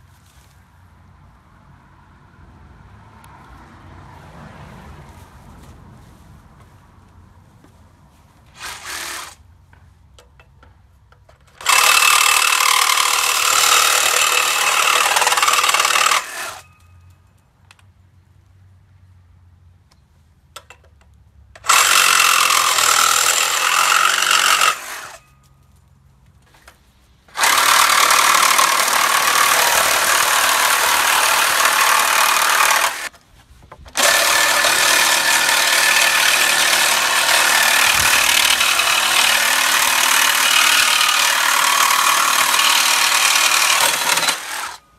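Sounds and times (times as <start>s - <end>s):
reciprocating saw cutting steel: 8.5s - 9.4s, 11.6s - 16.8s, 21.6s - 25.3s, 27.3s - 33.1s, 33.9s - 44.9s.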